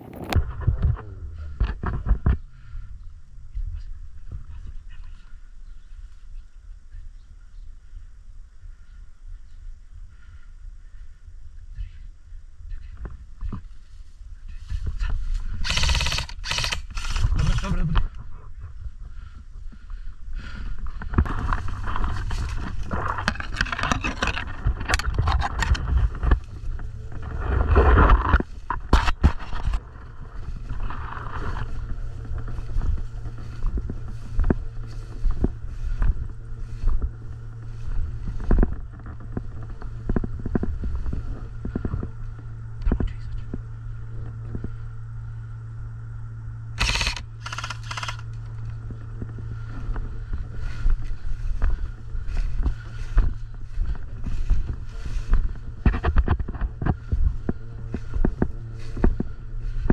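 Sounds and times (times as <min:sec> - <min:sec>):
gear scraping and rustling: 0:00.0 - 0:02.4, 0:13.4 - 0:18.1, 0:20.8 - 0:44.8, 0:46.8 - 0:59.9
steady low hum: 0:00.0 - 0:59.9
sharp clicks and snaps: 0:15.6 - 0:17.7, 0:46.8 - 0:48.7.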